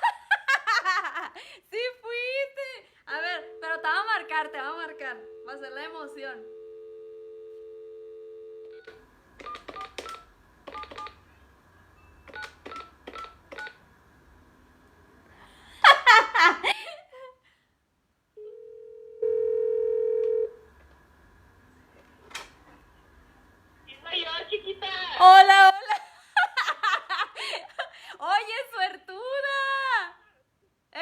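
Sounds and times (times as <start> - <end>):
phone line tone: 3.1 - 9.6, 18.4 - 20.6
ringback tone: 3.2 - 8.8
keypad dialing beeps: 8.7 - 11.2, 12.0 - 13.8.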